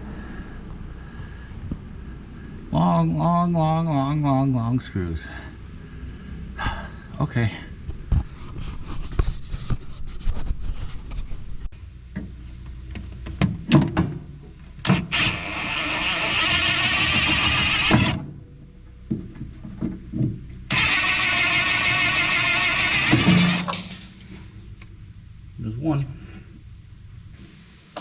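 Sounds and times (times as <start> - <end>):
power tool high whine: 14.8 - 18.2, 20.7 - 23.7
metal parts knocking and clinking: 23.2 - 24.2.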